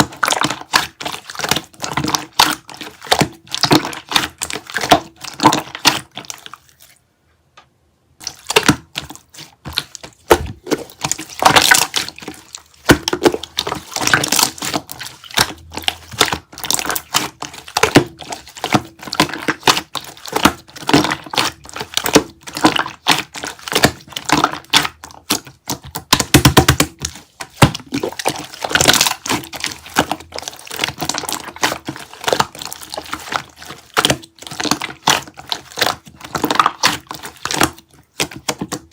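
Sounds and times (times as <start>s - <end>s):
close crackling and crunching: 8.2s - 38.9s.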